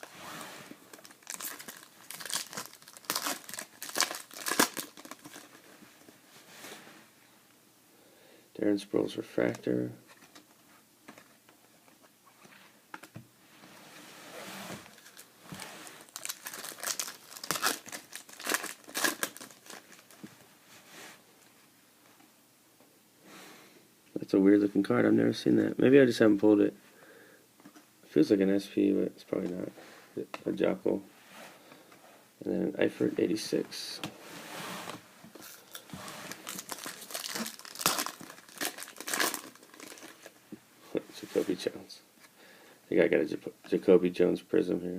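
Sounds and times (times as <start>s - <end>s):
foil wrapper tearing and crinkling: 1.0s - 5.5s, 16.0s - 20.2s, 35.4s - 40.3s.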